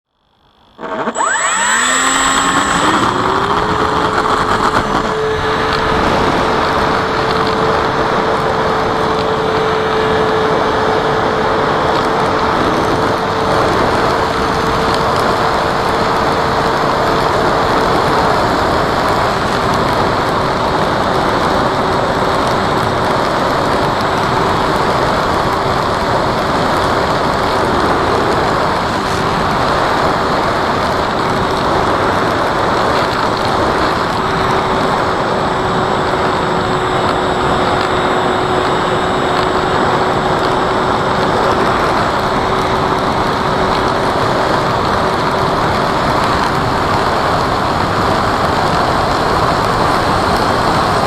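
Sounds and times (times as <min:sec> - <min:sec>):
model plane motor and propeller: 0:00.1 - 0:51.0.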